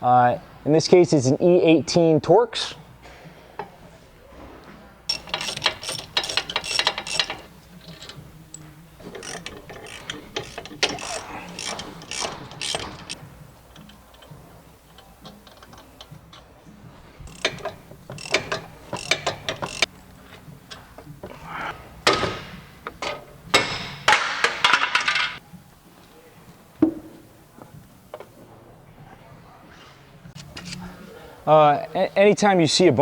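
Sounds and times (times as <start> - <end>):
hand ratchet clicking: 5.1 - 16.5, 17.3 - 21.0.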